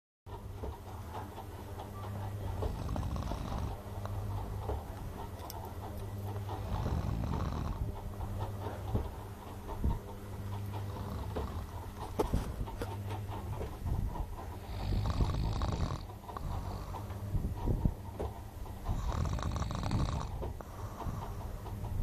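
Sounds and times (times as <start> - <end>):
steady low hum: 0.3 - 22.0
person snoring: 2.7 - 3.7, 6.7 - 7.8, 14.6 - 17.0, 19.0 - 21.2.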